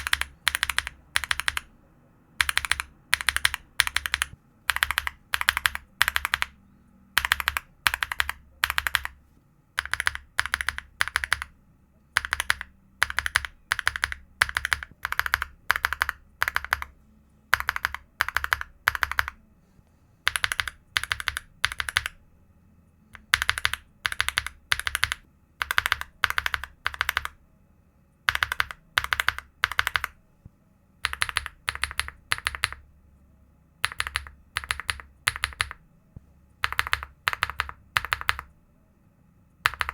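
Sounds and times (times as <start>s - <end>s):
mechanical keyboard keystrokes: 0.0s - 1.7s, 2.4s - 6.6s, 7.2s - 9.2s, 9.8s - 11.5s, 12.2s - 16.9s, 17.5s - 19.4s, 20.3s - 22.2s, 23.2s - 27.4s, 28.3s - 30.2s, 31.0s - 32.8s, 33.8s - 35.8s, 36.6s - 38.5s, 39.6s - 39.9s.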